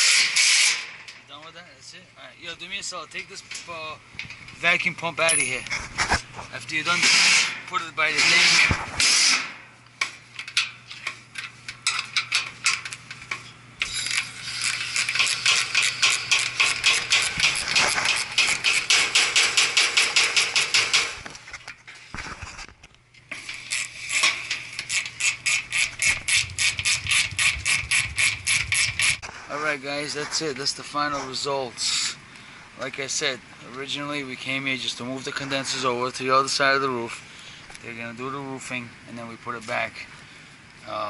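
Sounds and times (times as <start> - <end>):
ratcheting wrench clicking: 13.8 - 21.2, 23.4 - 29.2
low steady hum: 21.1 - 41.0.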